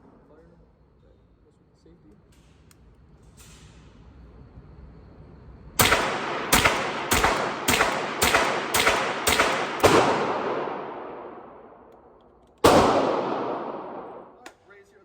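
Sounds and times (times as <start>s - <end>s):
rifle shots with echo: 5.8s - 14.4s.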